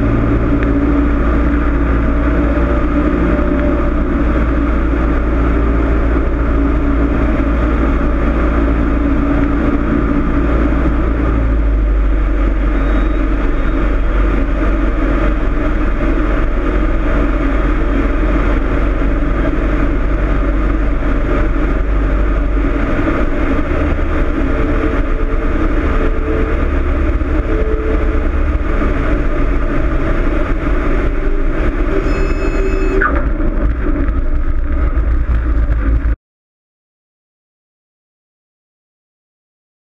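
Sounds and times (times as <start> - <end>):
airplane engine and propeller droning: 0.0 - 36.2
brief high beep: 12.8 - 13.8, 31.9 - 33.2.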